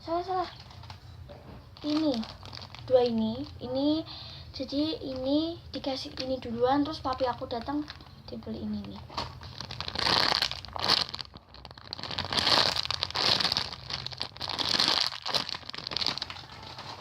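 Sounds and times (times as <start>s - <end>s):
plastic packaging crinkling: 1.7s - 3.8s, 7.1s - 17.0s.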